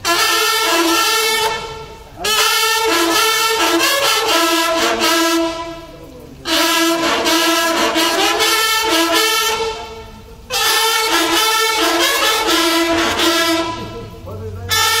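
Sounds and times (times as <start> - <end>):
brass band dance tune: 0.0 - 15.0.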